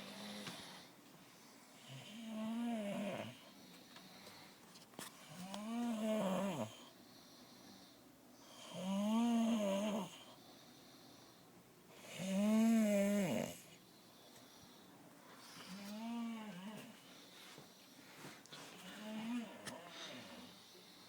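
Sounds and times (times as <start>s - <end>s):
person snoring: 12.1s - 13.6s.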